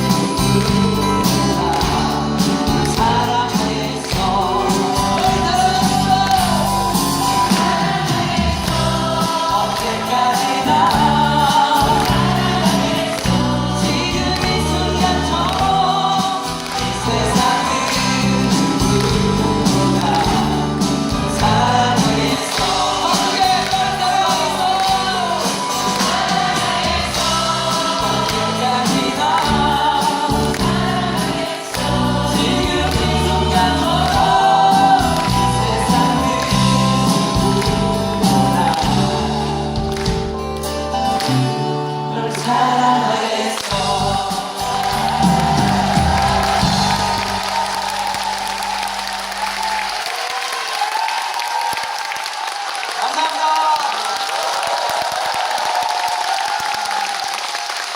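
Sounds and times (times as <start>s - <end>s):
ensemble singing: 0.0s - 40.0s, 42.1s - 49.6s
band with steady bass beat: 0.0s - 41.5s, 43.8s - 49.6s.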